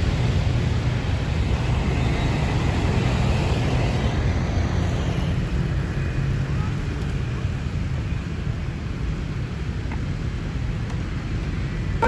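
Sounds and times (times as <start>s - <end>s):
diesel engine low rumble: 0.0s - 12.0s.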